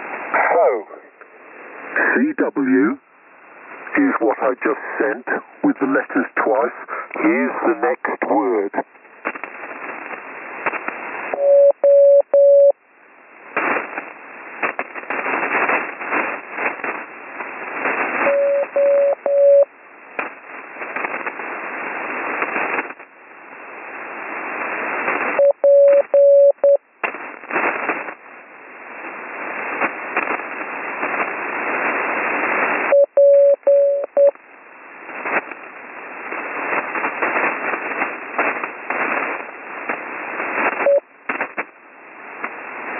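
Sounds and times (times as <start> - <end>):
radio hiss and static crashes: 0.0 - 12.0, 13.4 - 42.9
morse code beeps: 11.4 - 12.8, 18.3 - 19.7, 25.4 - 26.8, 32.9 - 34.4.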